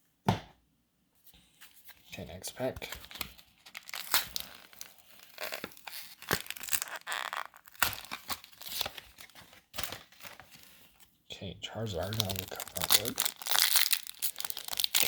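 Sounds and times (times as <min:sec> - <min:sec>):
foil wrapper crinkling and tearing: 0:02.8 - 0:11.1, 0:12.0 - 0:15.0.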